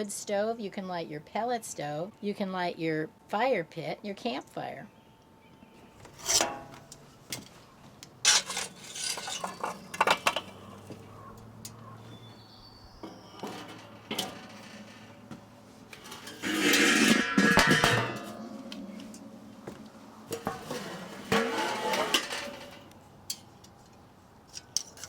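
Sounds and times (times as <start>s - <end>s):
metal grill clinking and rattling: 8.2s - 12.3s, 12.9s - 19.3s, 20.3s - 23.5s.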